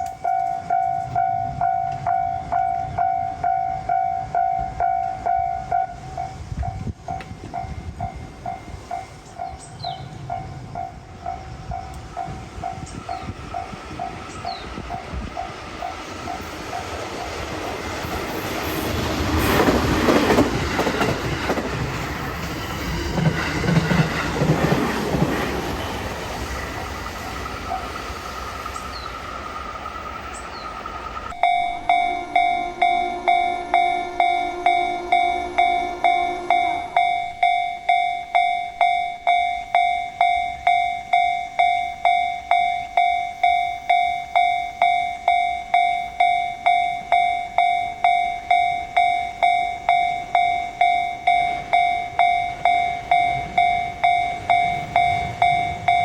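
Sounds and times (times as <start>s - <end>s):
level-crossing warning bell ringing: 0.0s - 56.0s
lower steady tone: 27.0s - 56.0s.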